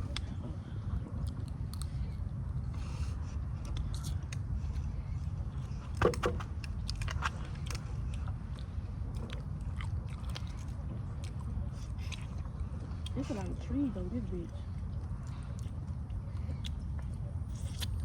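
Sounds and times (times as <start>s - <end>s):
chewing and crunching: 0.0s - 18.0s
steady low rumble: 0.0s - 18.0s.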